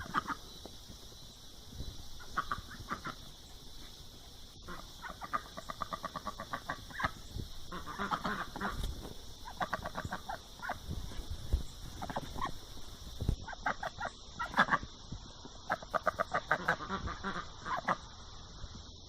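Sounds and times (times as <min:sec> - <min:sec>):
duck quacking: 0:00.0 - 0:00.4, 0:02.2 - 0:03.3, 0:04.6 - 0:10.8, 0:13.4 - 0:14.8, 0:15.7 - 0:18.1
high-pitched hiss: 0:00.0 - 0:19.0.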